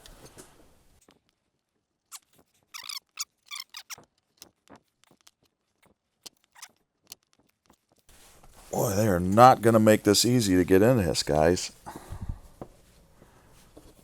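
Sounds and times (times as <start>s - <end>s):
rubber cable jacket squeaking: 1.9s - 8.0s.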